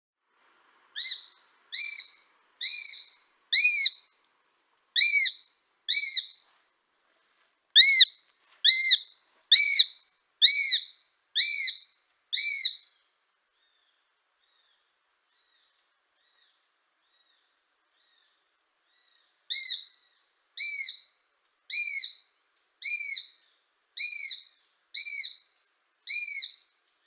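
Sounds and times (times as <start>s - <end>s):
hawk calling: 1.0s - 4.0s, 7.8s - 12.8s.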